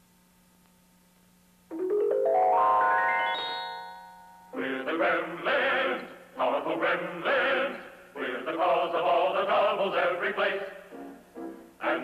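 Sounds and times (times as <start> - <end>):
musical accompaniment: 1.7 - 5.8
men singing: 4.6 - 10.8, 11.8 - 12.0.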